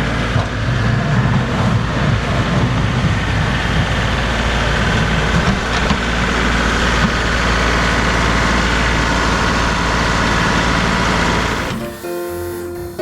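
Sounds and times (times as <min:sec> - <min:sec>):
diesel tractor engine running: 0:00.0 - 0:13.0.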